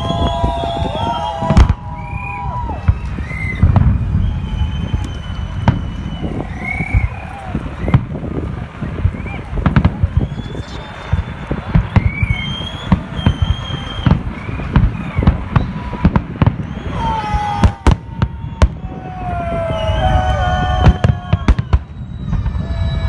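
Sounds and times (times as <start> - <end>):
fireworks bangs: 0.0 - 23.0
fireworks whistling: 0.0 - 23.0
low rumble: 1.6 - 10.4.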